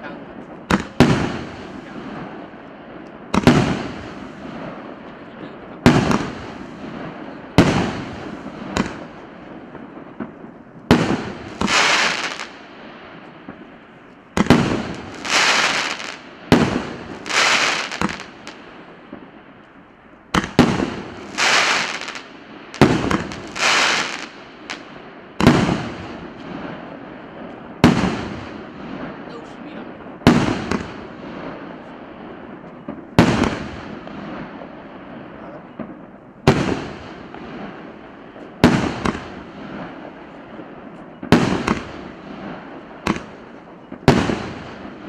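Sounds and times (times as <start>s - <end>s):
crackling hiss: 0.0s - 45.0s
firework shots banging: 0.4s - 2.4s, 3.3s - 4.9s, 5.8s - 19.3s, 20.3s - 27.0s, 30.1s - 31.6s, 32.5s - 34.7s, 35.8s - 37.8s, 38.6s - 40.1s, 41.0s - 45.0s.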